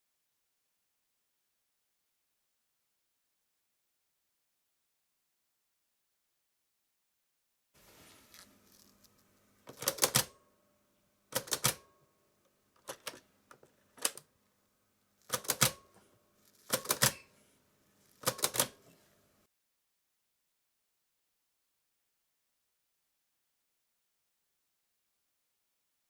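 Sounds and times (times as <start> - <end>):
sharp mechanical clicks and clacks: 16.6 - 17.2, 18.2 - 18.8.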